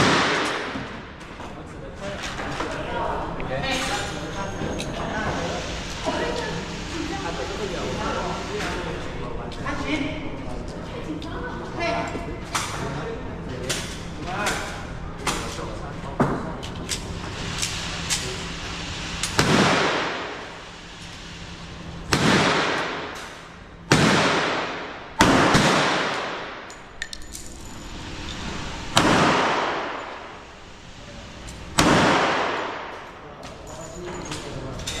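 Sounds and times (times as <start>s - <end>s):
gunshots echoing indoors: 0.0s - 1.0s, 19.4s - 20.5s, 22.1s - 26.9s, 28.9s - 30.5s, 31.8s - 33.2s.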